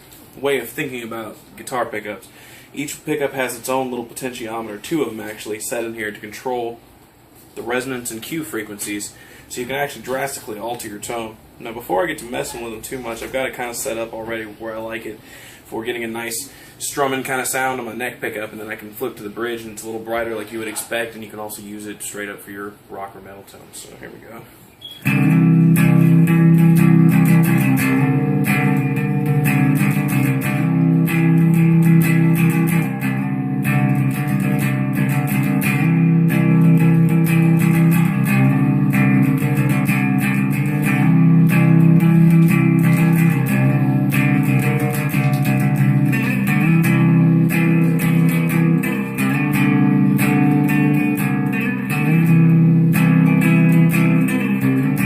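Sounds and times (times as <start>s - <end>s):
electric guitar strummed chords: 25.0s - 55.0s.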